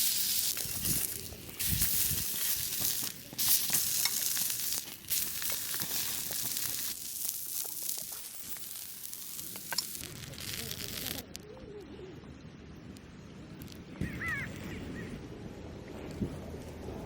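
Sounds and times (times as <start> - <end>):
food sizzling on griddle: 0.0 - 11.2.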